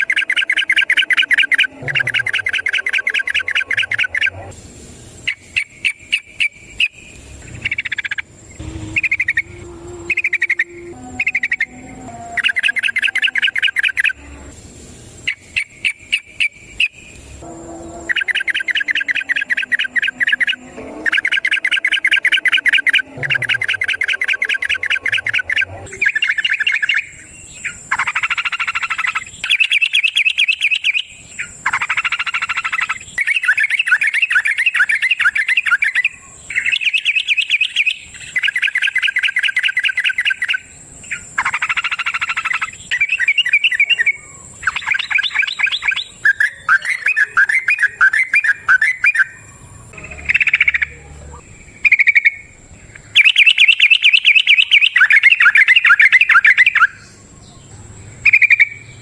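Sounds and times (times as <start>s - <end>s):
bird chattering trills: 0.0s - 4.5s, 5.2s - 14.5s, 15.2s - 57.6s, 58.2s - 59.0s.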